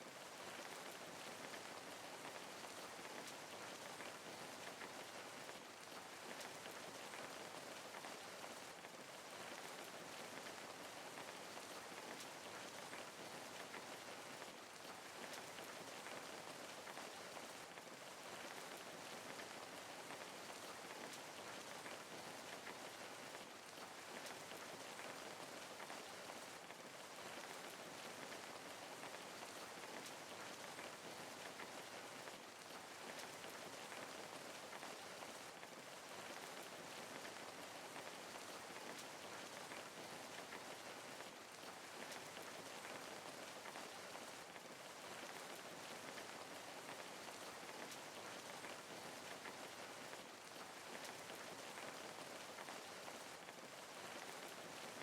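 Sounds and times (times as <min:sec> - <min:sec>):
rain pattering on a surface: 0:00.0 - 0:55.0.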